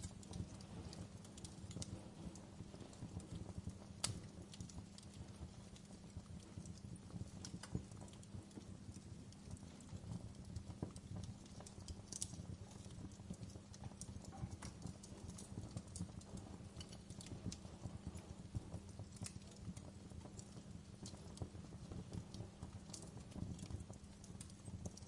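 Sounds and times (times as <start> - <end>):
wood fire crackling: 0.0 - 25.0.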